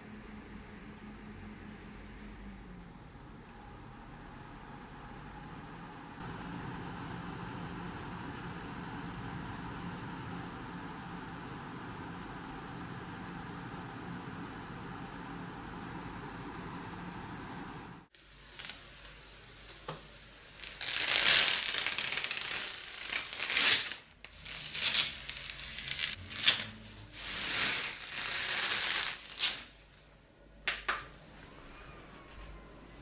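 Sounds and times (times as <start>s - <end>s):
packaging crinkling and tearing: 20.5s - 30.0s.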